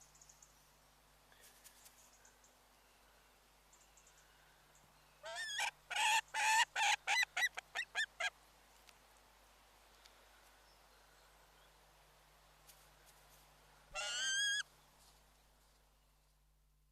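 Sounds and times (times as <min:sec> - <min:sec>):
bird giving harsh calls: 0:14.0 - 0:14.6.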